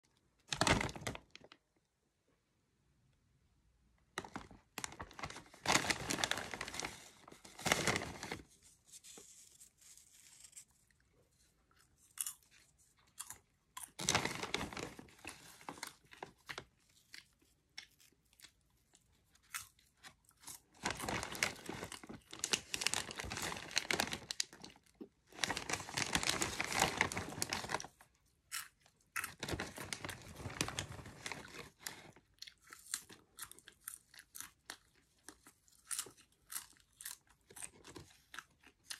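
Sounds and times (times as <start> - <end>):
loud crunching of popcorn: 11.7 - 38.9.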